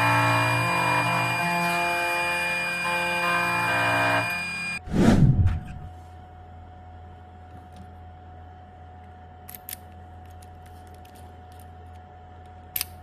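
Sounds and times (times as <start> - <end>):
key cutting machine humming: 0.0 - 4.8.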